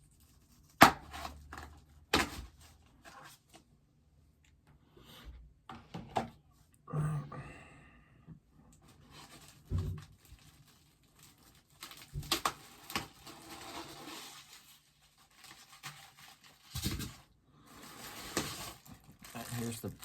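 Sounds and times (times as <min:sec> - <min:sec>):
packaging rustling: 0:09.0 - 0:20.0.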